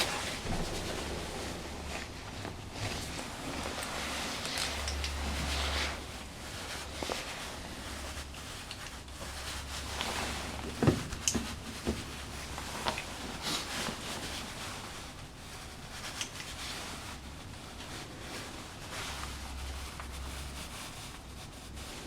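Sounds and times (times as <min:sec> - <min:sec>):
low steady hum: 0:00.0 - 0:22.0
cable handling knocks and clicks: 0:10.7 - 0:12.1.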